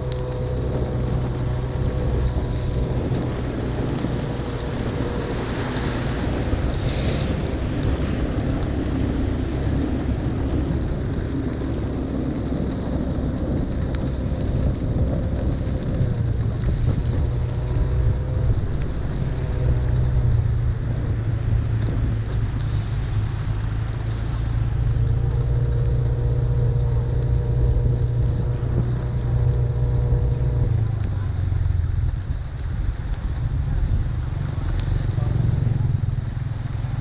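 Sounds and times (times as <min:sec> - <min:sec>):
continuous rushing noise: 0:00.0 - 0:37.0
vehicle engines running: 0:00.0 - 0:37.0.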